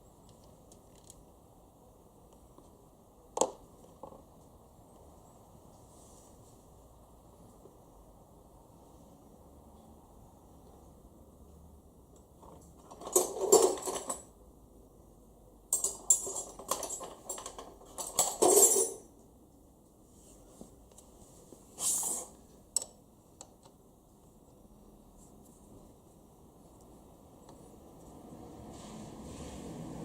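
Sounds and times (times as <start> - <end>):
metal parts and tools clinking: 12.4 - 14.3, 15.7 - 19.1, 21.8 - 23.0.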